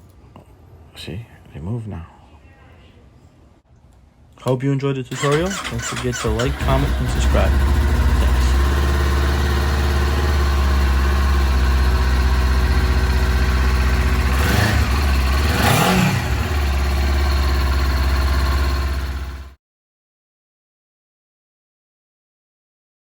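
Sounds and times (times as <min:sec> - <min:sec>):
engine idling: 0:05.1 - 0:19.6.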